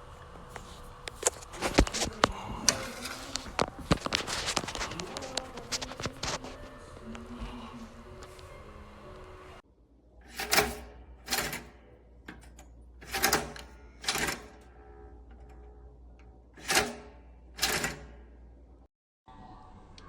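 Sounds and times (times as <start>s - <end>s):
toaster lever metal clacks: 10.3s - 14.6s, 16.6s - 18.2s.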